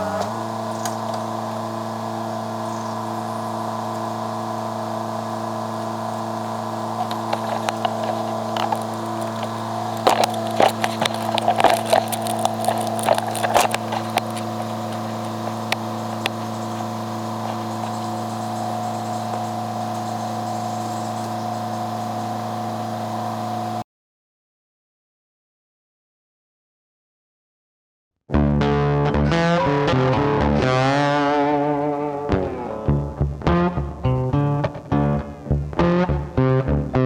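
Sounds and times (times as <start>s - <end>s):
heavy machine engine running: 0.0s - 23.8s.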